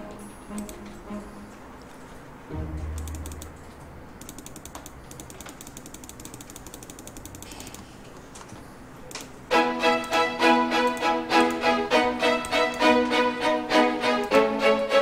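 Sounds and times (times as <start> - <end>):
rapid mechanical clicking: 3.0 - 3.6, 4.2 - 9.3.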